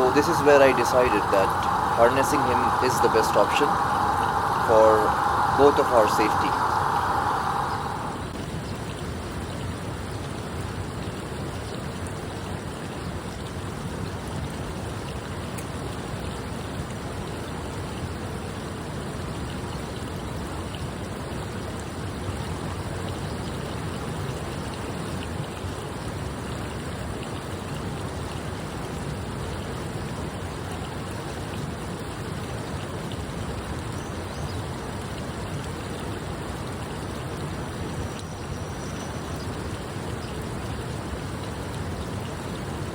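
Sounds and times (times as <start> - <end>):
rushing wind: 0.0 - 8.6.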